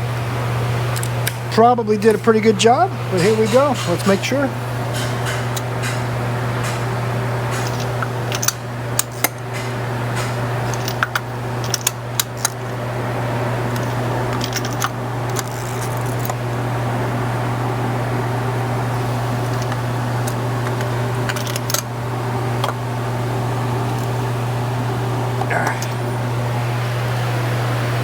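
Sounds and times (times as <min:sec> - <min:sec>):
steady low hum: 0:00.0 - 0:28.0
wrench metallic clicks: 0:07.5 - 0:12.6, 0:13.7 - 0:16.4.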